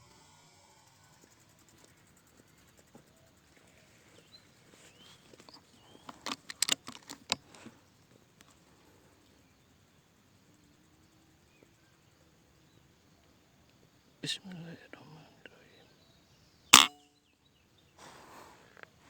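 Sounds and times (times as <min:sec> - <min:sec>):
sharp clicks and taps: 0:06.1 - 0:07.5, 0:16.8 - 0:17.0.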